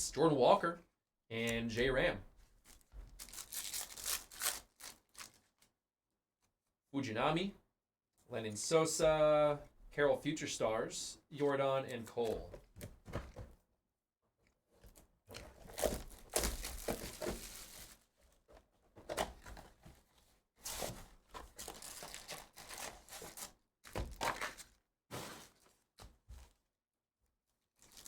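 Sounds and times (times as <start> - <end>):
foil wrappers tearing and crinkling: 2.7 - 5.7, 15.7 - 18.1, 21.5 - 24.7, 27.8 - 28.0.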